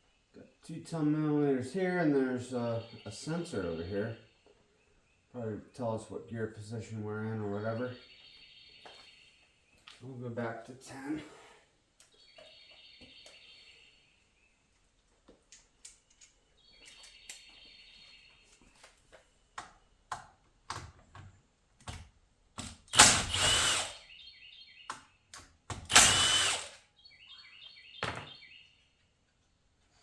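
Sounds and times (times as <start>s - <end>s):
cordless power ratchet running: 22.9s - 24.0s, 25.9s - 26.8s.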